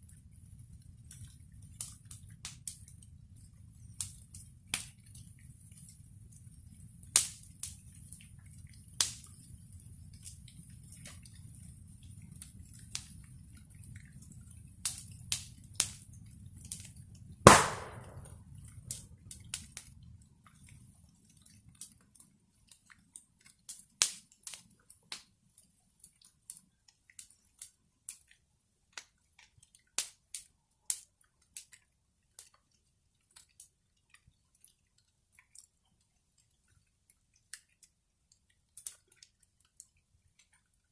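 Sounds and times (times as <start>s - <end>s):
wood bonfire crackling: 0.0s - 40.9s
sharp pops from fire: 1.0s - 3.1s, 3.8s - 9.5s, 10.1s - 13.4s, 14.1s - 19.9s, 23.7s - 25.3s, 29.0s - 31.8s.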